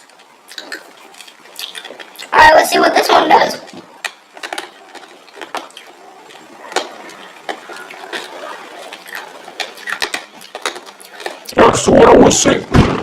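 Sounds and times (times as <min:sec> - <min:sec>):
wrapper clicking and crackling: 0:00.0 - 0:02.3, 0:03.9 - 0:11.6.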